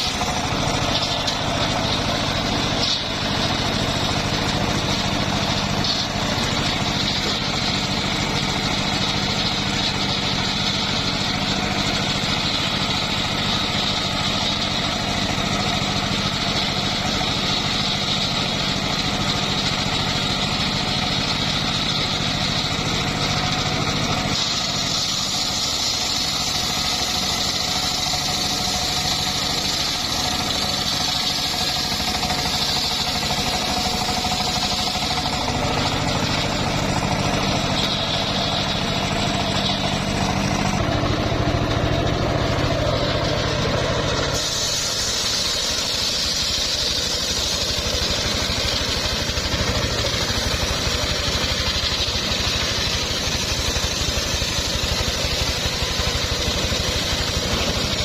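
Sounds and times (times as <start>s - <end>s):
engine-driven sawmill running: 0.0s - 58.0s
high hiss: 37.2s - 57.8s.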